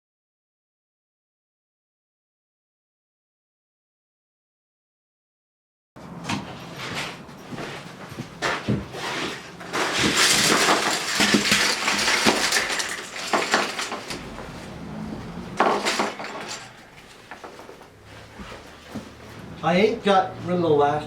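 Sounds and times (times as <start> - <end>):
hard objects clattering and clinking: 8.4 - 19.3.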